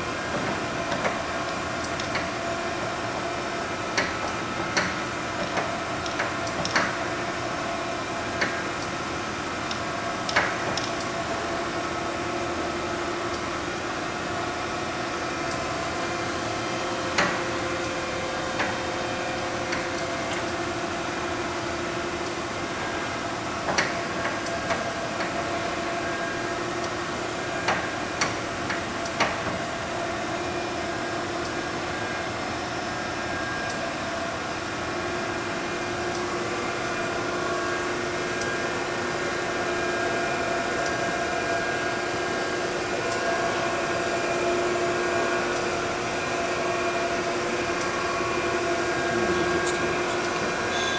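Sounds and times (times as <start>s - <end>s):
surface grinder humming: 47.4s - 50.9s.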